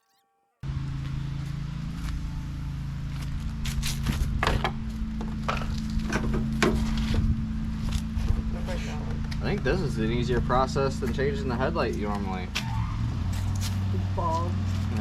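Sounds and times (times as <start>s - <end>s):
low machine hum: 0.6s - 11.0s.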